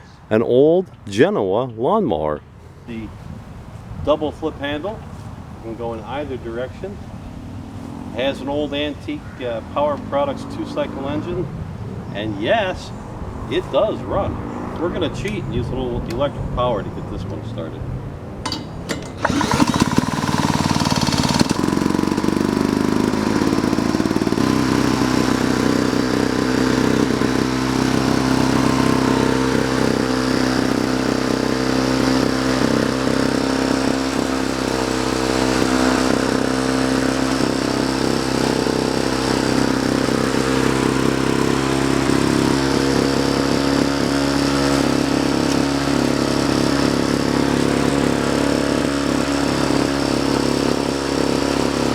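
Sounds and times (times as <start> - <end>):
electric starter cranking: 18.4 - 51.9
lawnmower engine running: 18.4 - 51.9.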